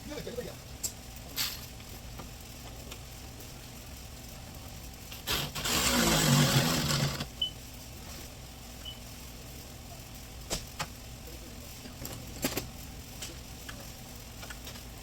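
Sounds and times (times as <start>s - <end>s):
small power tool motor whirring: 5.2s - 7.3s.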